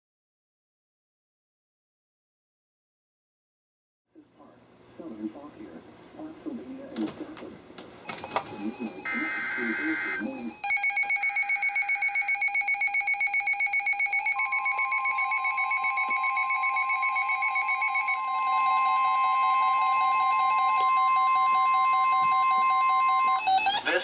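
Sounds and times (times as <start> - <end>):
weather alert radios pulsing beeps: 8.0 - 10.8
steady warning alarm tone: 8.0 - 24.0.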